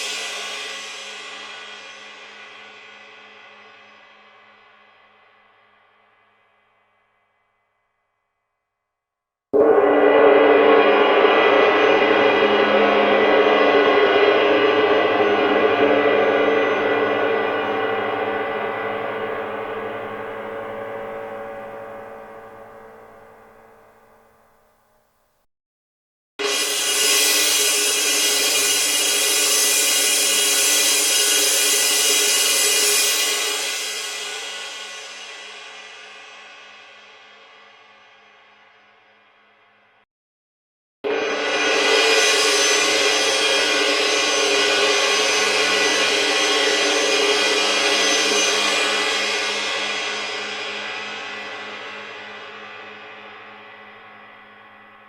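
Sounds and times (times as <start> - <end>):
bright cymbal wash: 9.6 - 24.5
large gong ringing: 9.6 - 24.6.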